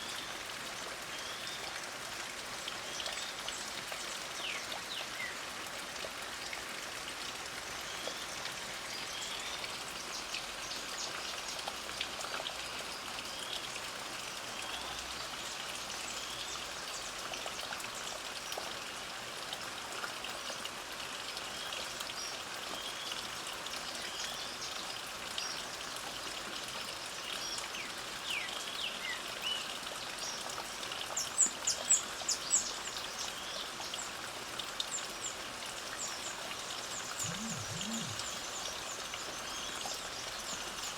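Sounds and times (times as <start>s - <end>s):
light rain falling: 0.0s - 40.9s
birds chirping: 36.9s - 39.0s.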